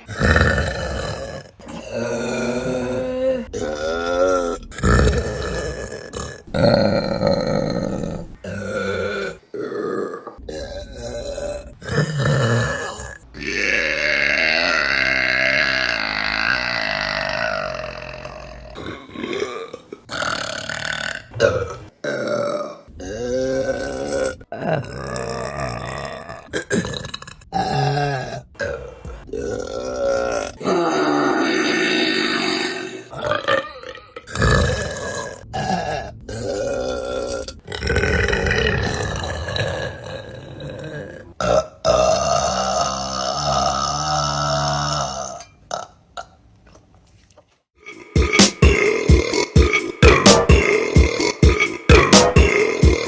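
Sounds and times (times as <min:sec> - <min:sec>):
women burping: 0:30.4 - 0:34.2, 0:47.8 - 0:53.0.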